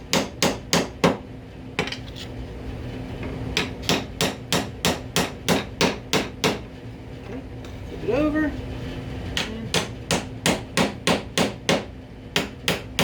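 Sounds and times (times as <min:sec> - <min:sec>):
hammer driving nail into wood: 0:09.4 - 0:13.0.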